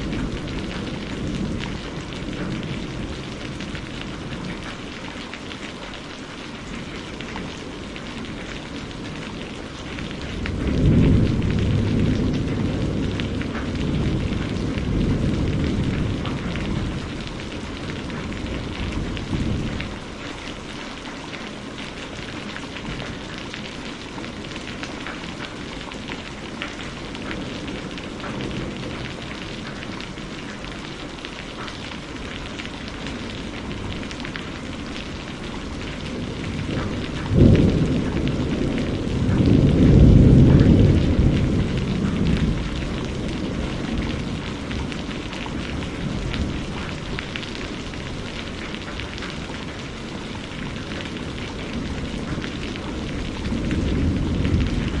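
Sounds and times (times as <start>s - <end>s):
distant thunder rumbling: 0.0s - 5.3s, 6.5s - 20.6s, 22.1s - 55.0s
heavy rain pattering: 0.0s - 55.0s
thunderclap: 10.1s - 20.0s, 33.2s - 49.8s, 50.6s - 55.0s.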